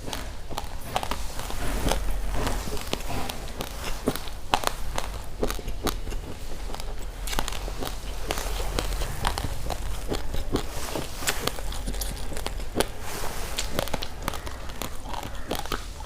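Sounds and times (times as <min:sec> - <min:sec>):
chewing crunchy rice grains: 0:00.0 - 0:16.0
steady low hum: 0:00.0 - 0:16.0.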